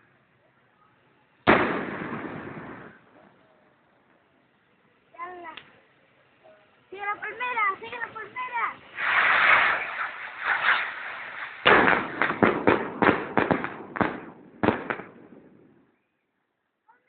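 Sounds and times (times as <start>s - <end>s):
firework hiss: 1.4s - 3.2s, 6.9s - 15.8s
firework bangs: 1.4s - 3.6s, 7.2s - 16.1s.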